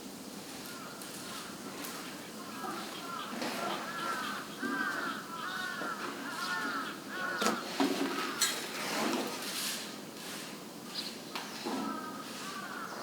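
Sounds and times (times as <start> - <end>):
crow cawing: 0.6 - 8.5, 11.8 - 13.0.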